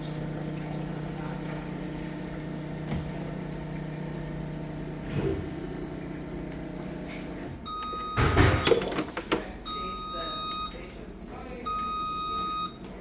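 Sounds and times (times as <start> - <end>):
machine pump hum: 0.0 - 13.0
loud handling clunk: 8.2 - 9.4.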